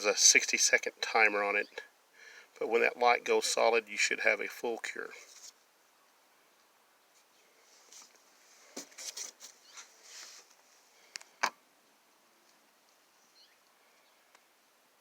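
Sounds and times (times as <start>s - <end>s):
small clicks and rustles: 6.6s - 14.5s.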